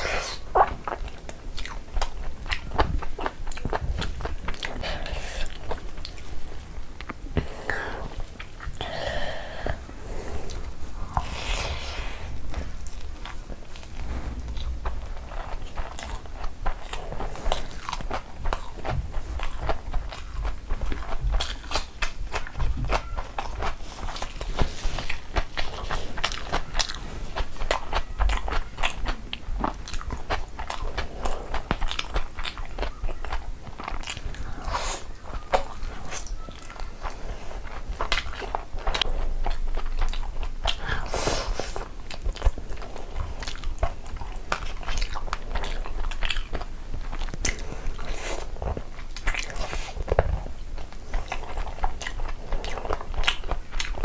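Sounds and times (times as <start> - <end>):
person chewing food: 0.0 - 54.0.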